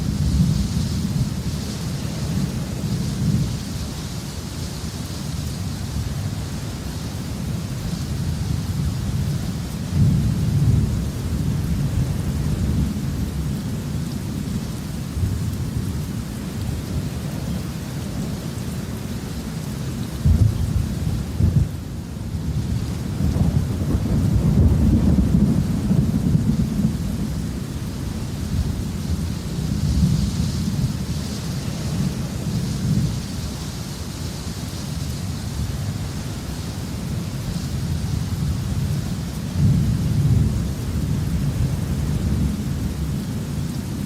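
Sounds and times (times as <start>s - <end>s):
low rolling thunder: 0.0s - 3.7s, 7.5s - 18.3s, 20.0s - 33.5s, 36.9s - 44.0s
steady rain: 0.0s - 44.0s.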